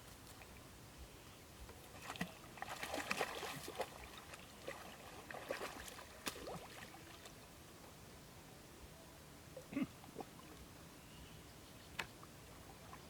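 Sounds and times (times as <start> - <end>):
shallow water splashing: 1.9 - 7.3.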